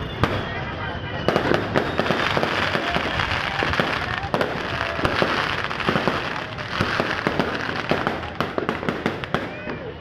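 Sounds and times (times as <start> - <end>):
fireworks crackling and popping: 0.0 - 10.0.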